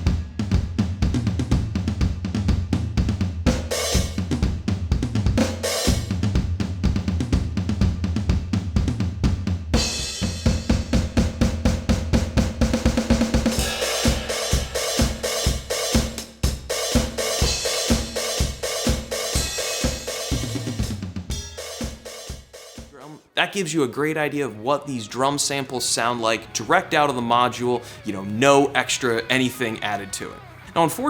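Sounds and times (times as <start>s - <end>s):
electronic drum kit beat: 0.0s - 23.2s
cymbal wash: 13.6s - 20.4s.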